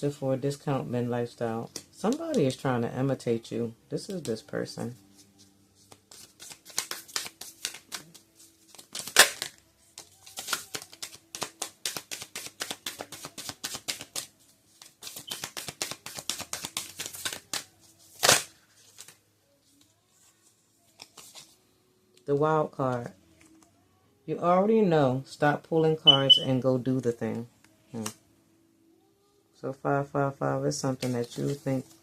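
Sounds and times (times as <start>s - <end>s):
cards being shuffled: 4.0s - 21.6s, 30.9s - 32.0s
slap of cards: 8.8s - 9.6s, 10.4s - 14.3s, 15.0s - 18.5s.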